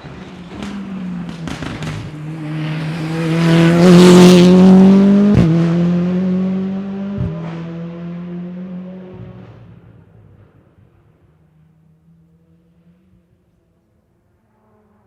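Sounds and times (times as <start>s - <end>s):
rally car engine at high revs: 0.4s - 9.8s.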